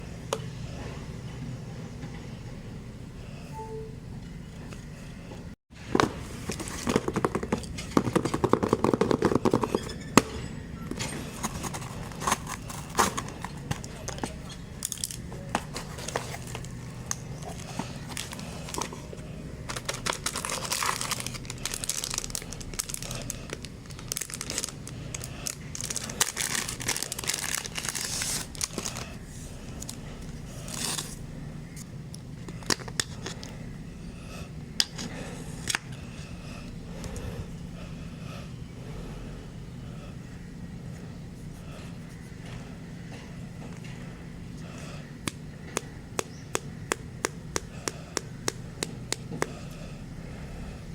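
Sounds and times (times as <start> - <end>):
plastic packaging crinkling and tearing: 11.4 - 29.2, 30.6 - 31.2.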